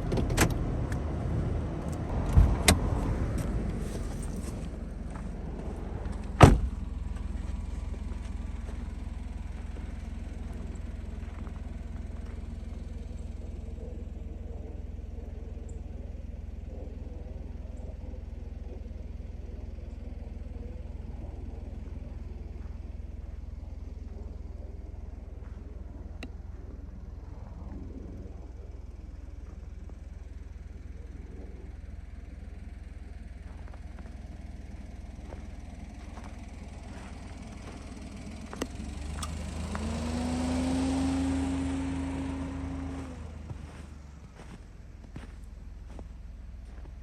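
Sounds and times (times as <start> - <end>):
car engine low rumble: 0.0 - 47.0
loud thump: 6.3 - 6.8.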